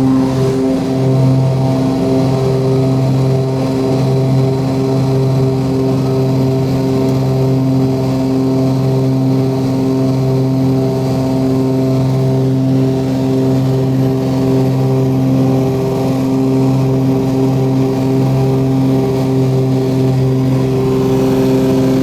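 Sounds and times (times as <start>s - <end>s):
twin propeller engines droning: 0.0s - 22.0s.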